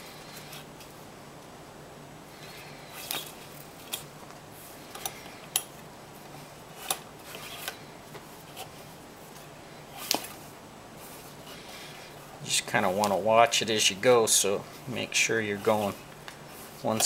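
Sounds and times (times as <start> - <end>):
cord rustling and clicking: 2.9 - 11.7.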